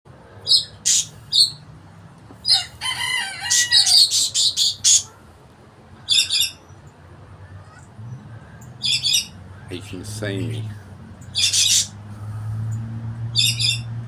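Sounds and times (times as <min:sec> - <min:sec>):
budgerigar alarm calls: 0:00.4 - 0:01.6, 0:03.5 - 0:05.1, 0:06.0 - 0:06.7, 0:08.8 - 0:09.8, 0:11.3 - 0:12.0, 0:13.3 - 0:13.9
bird warbling call: 0:11.3 - 0:12.4.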